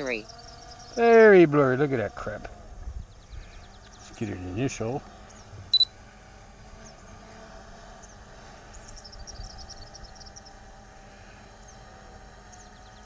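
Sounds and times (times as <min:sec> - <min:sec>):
electronic double beep: 0:05.7 - 0:05.9
high-pitched chirping: 0:05.7 - 0:05.9.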